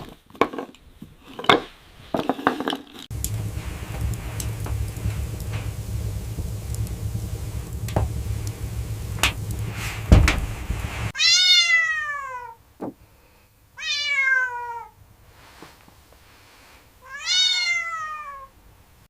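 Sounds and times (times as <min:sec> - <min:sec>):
knocks: 0:03.1 - 0:10.9
low rushing wind: 0:03.1 - 0:11.2
cat meowing: 0:11.2 - 0:12.6, 0:13.8 - 0:15.0, 0:17.0 - 0:18.5.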